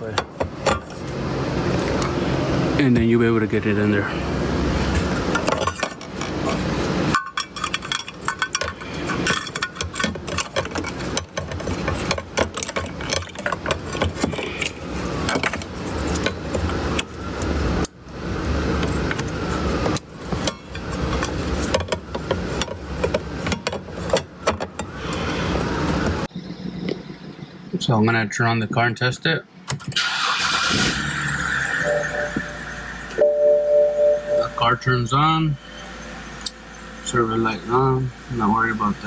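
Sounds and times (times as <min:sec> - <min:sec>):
metal tools clinking: 0:07.1 - 0:11.2
low steady hum: 0:31.6 - 0:39.0.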